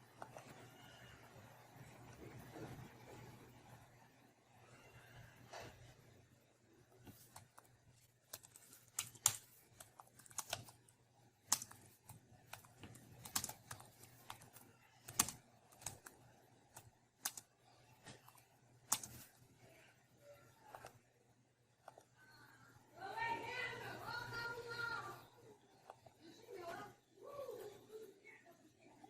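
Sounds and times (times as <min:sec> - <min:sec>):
computer keyboard typing: 0:07.1 - 0:17.5, 0:18.1 - 0:19.4.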